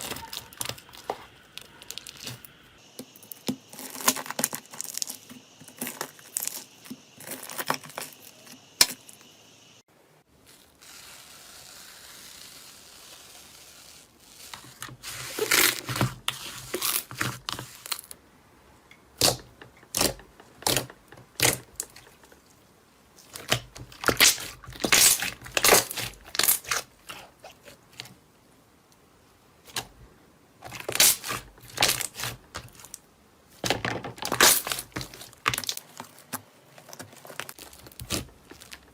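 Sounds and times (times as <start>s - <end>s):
crunchy material being crushed: 0.0s - 9.0s, 10.4s - 18.0s, 19.2s - 22.4s, 23.2s - 28.1s, 30.6s - 33.0s, 33.6s - 38.9s.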